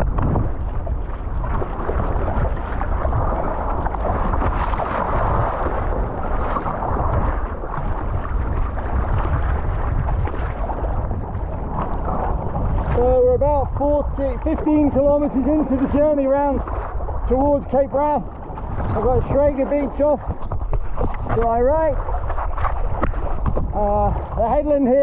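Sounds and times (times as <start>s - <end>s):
water splashing against kayak: 0.0s - 25.0s
wind noise on microphone: 0.0s - 25.0s.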